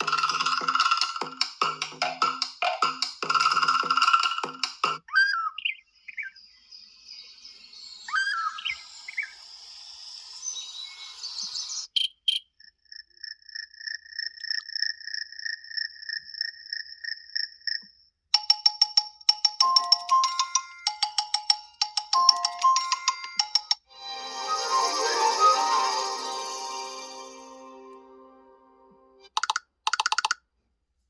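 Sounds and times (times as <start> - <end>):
percussive ringtone melody: 0.0 - 5.0, 18.4 - 30.3.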